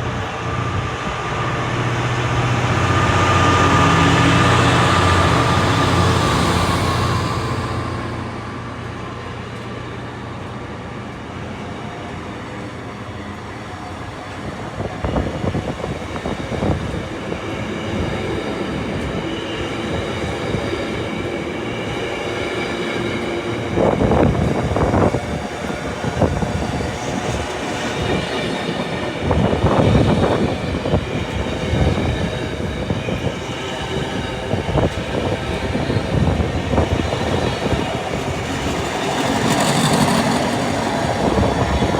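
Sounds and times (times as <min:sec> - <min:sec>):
train rumble: 0:00.0 - 0:41.9
train wheels clattering: 0:23.0 - 0:41.9.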